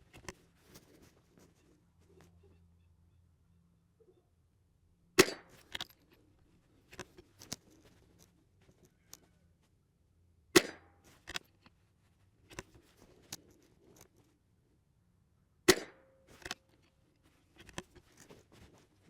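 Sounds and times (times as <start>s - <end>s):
rifle shots: 5.2s - 5.6s, 10.6s - 10.9s, 15.7s - 16.0s
rifle bolt clicks: 5.2s - 6.0s, 10.6s - 11.5s, 15.7s - 16.6s.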